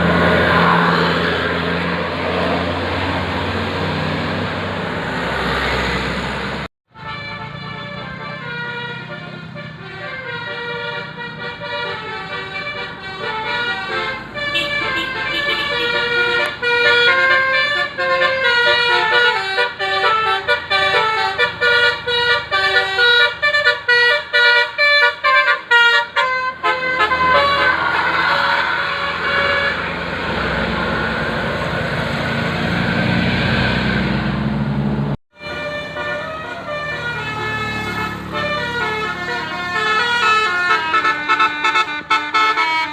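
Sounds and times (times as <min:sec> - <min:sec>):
bus musical horn tune: 0:06.9 - 0:30.6, 0:35.4 - 0:42.9
rushing noise: 0:27.0 - 0:34.6.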